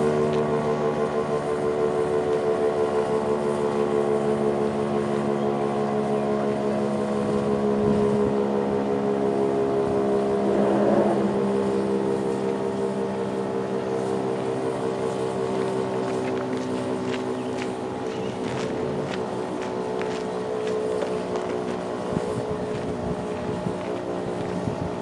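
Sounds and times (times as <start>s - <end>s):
rotating warning siren: 0.0s - 25.0s.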